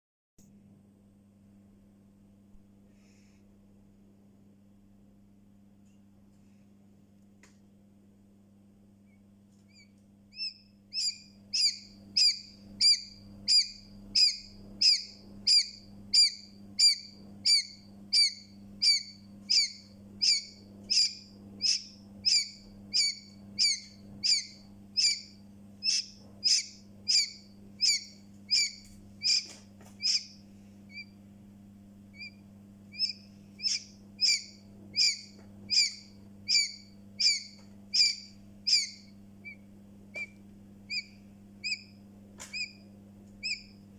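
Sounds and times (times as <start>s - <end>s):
steady low hum: 0.4s - 43.9s
chick peeping: 9.7s - 31.2s, 32.1s - 43.8s.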